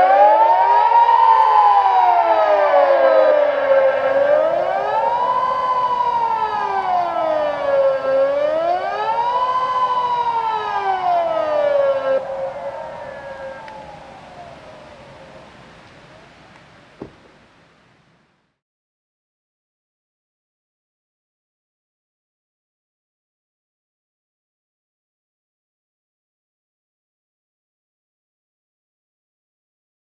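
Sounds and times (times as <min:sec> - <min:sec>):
civil defence sirens wailing: 0:00.0 - 0:17.0.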